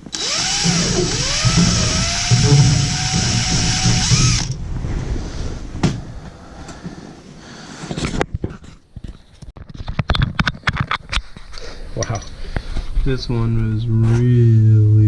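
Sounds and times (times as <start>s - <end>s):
hammer drill running: 0.0s - 4.6s
handling noise with clicks and knocks: 7.9s - 13.0s.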